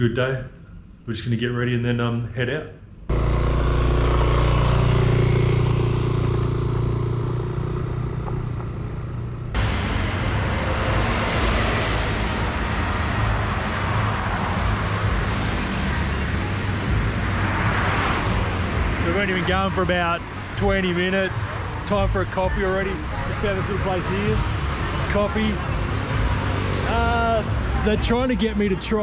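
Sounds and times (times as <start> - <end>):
scooter engine running: 3.1 - 19.2
wind and road noise: 3.1 - 29.0.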